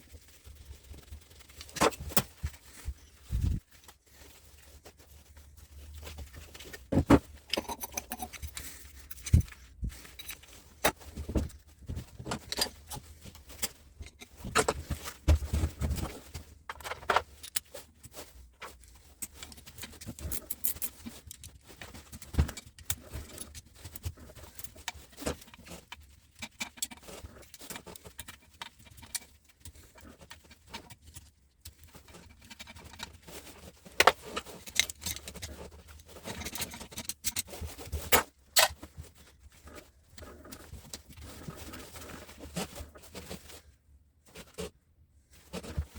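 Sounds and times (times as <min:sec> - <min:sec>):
metal parts and tools clinking: 0:06.6 - 0:11.4, 0:12.0 - 0:15.1.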